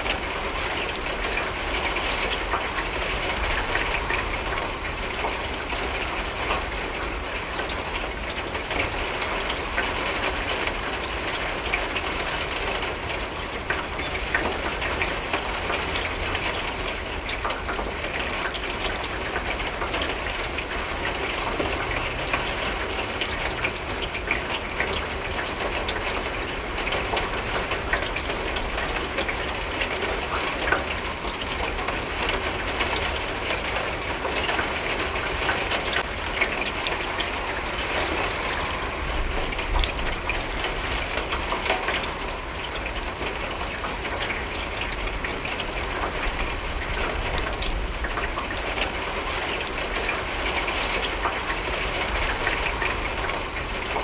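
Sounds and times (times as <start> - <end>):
rain pattering on window: 0.0 - 54.0.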